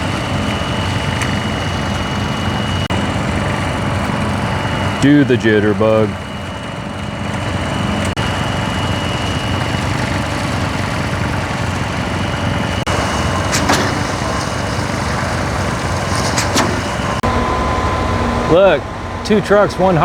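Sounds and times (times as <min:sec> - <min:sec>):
heavy diesel engines running: 0:00.0 - 0:20.0.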